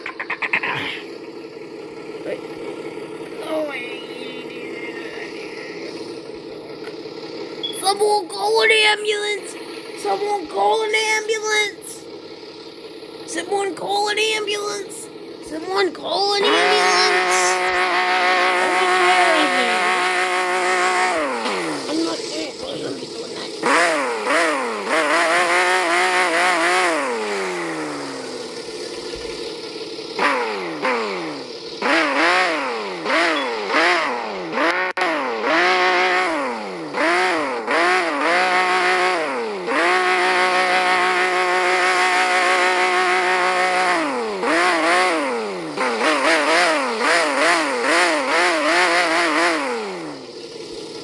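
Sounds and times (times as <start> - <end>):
video game engine revving: 0.0 - 51.0.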